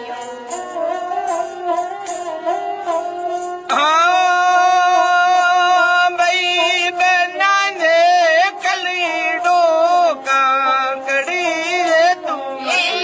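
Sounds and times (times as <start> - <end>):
person singing folk song: 3.3 - 13.0.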